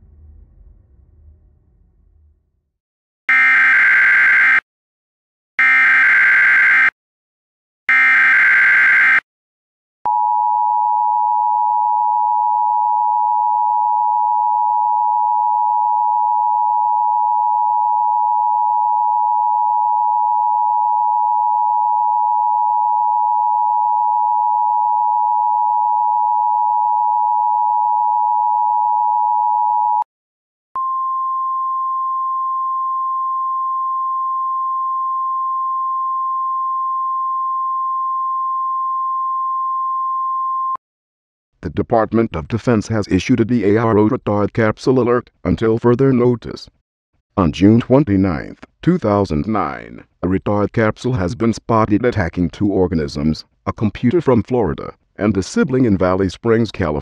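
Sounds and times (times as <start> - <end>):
single steady tone: 30.8 - 40.8.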